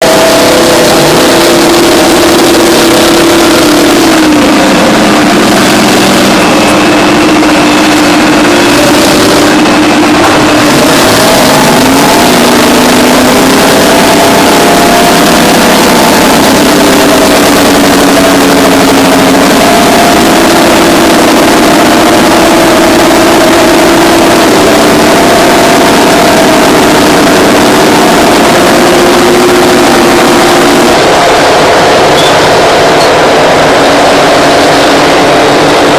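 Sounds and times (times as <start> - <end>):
bulldozer diesel engine working: 0.0 - 35.9.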